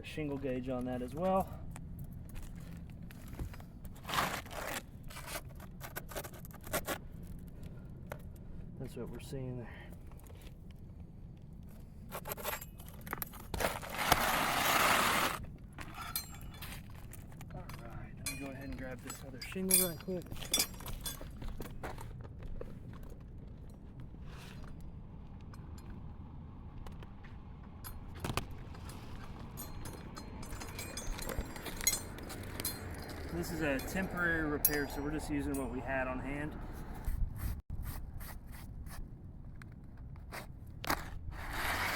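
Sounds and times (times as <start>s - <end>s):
roofing shingle scraping and clicking: 2.3s - 8.2s
material scraping across shingles: 3.2s - 7.0s, 12.1s - 16.0s, 40.2s - 41.9s.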